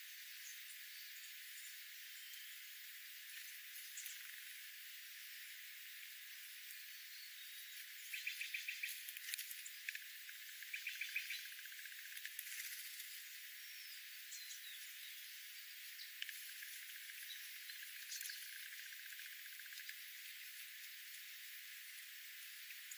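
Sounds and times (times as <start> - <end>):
songbirds calling: 0.0 - 22.9
steady high hiss: 0.0 - 22.9.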